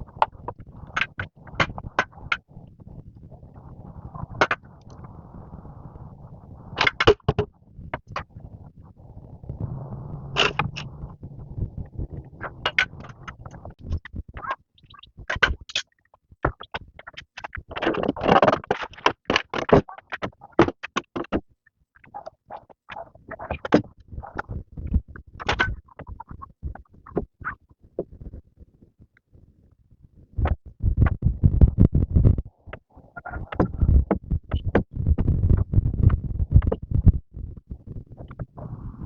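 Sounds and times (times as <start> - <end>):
low rumble: 9.4 - 13.7.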